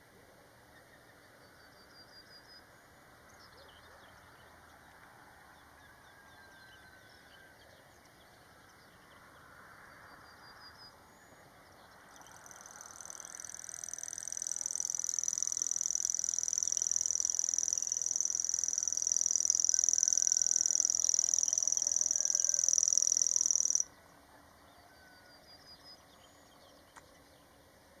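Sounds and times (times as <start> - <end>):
cricket chirping: 11.9 - 23.9.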